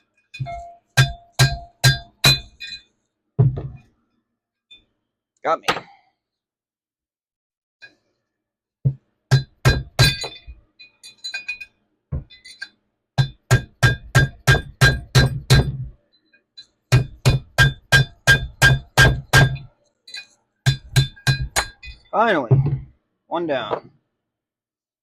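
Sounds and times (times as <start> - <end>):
light metallic clinks: 10.2 - 12.8.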